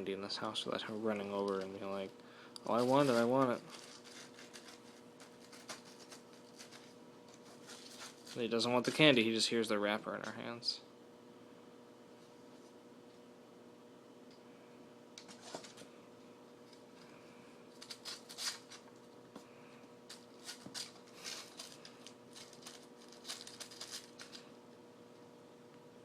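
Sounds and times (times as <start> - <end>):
kitten scratching at box: 2.8 - 8.4.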